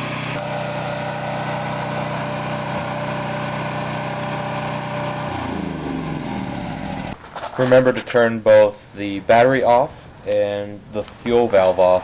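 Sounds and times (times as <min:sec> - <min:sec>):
generator engine running: 0:00.0 - 0:07.6.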